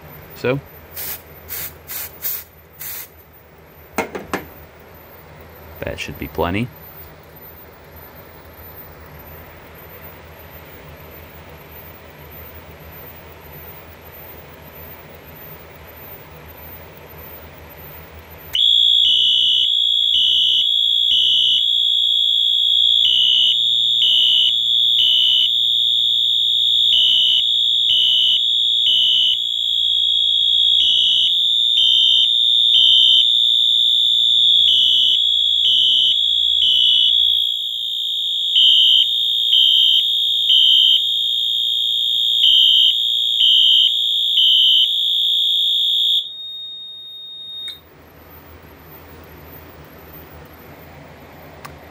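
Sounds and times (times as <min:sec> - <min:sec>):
pulsed fire alarm horn blasts: 0:18.5 - 0:47.8
steady high-pitched horn tone: 0:18.6 - 0:47.4.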